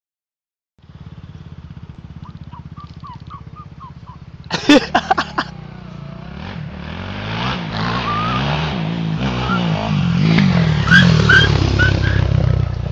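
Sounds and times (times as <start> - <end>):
vehicle engine idling: 0.8 - 7.2.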